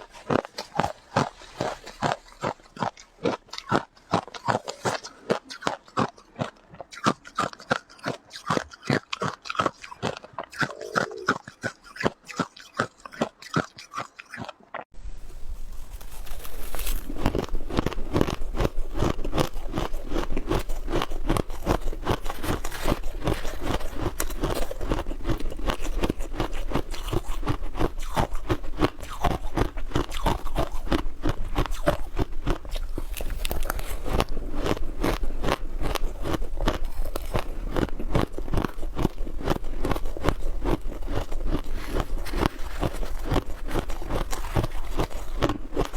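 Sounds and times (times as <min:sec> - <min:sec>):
ice being chewed and crunched: 0:00.0 - 0:14.9, 0:15.6 - 0:45.9.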